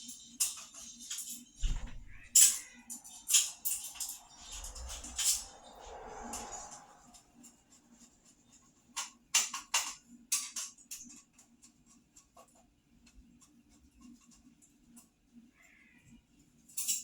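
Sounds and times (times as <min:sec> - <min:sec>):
fan parts clicking and knocking: 0:00.0 - 0:07.1, 0:09.0 - 0:15.0.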